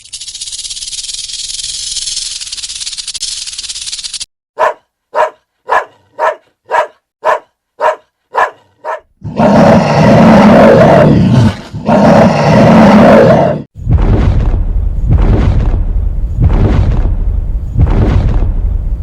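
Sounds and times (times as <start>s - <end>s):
animal barking: 4.6s - 13.6s
animal roaring: 9.2s - 13.7s.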